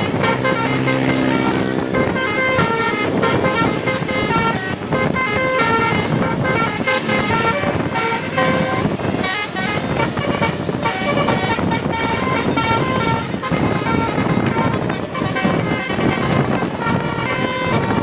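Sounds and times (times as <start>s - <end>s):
musical air horn melody: 0.0s - 18.0s
noisy rumble: 0.0s - 18.0s.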